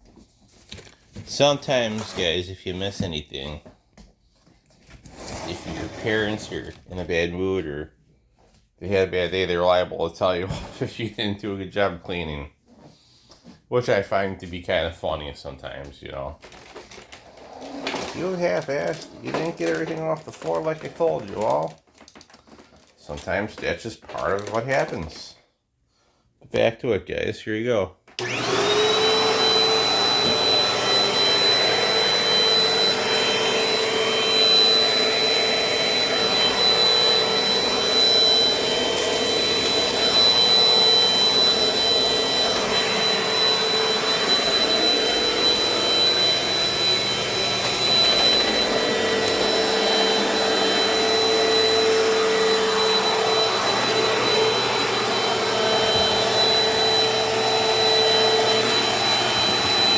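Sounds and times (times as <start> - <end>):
vacuum cleaner running: 5.1 - 6.8, 17.1 - 21.8, 28.2 - 59.9.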